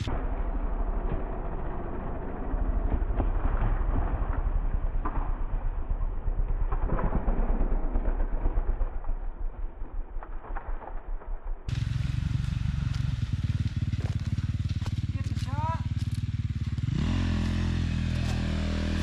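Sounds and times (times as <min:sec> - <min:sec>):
muffled dirt bike engine: 0:00.0 - 0:19.0.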